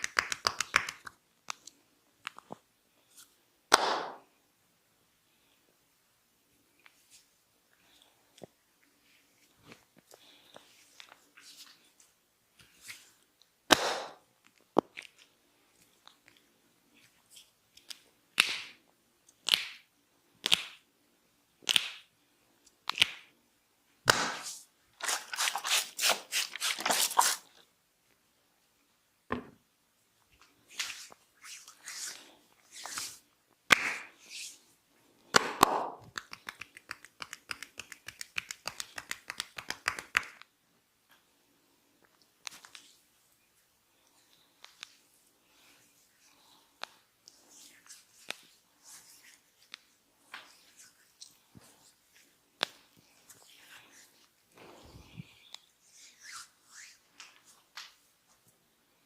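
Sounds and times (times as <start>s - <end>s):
sharp slaps: 3.7s - 4.2s, 13.7s - 14.2s, 24.0s - 24.6s, 33.7s - 34.2s, 35.3s - 40.4s
hands rubbing through hair: 30.6s - 33.3s, 36.1s - 40.4s, 45.6s - 54.4s, 55.0s - 57.6s.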